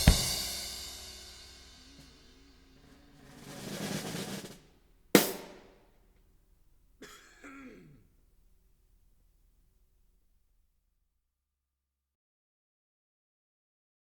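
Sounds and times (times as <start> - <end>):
cymbal wash: 0.0 - 4.6
sharp drum hit ringing: 0.0 - 4.6, 5.2 - 5.8.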